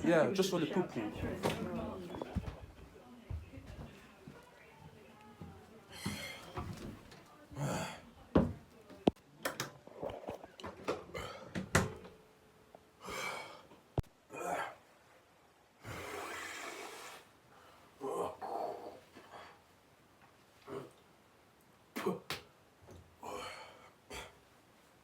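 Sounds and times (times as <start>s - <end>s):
person blowing air: 15.8s - 17.3s.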